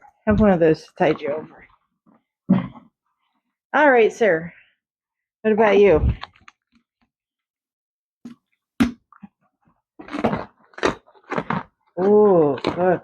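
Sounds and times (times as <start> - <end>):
horse crunching a treat: 10.0 - 13.0.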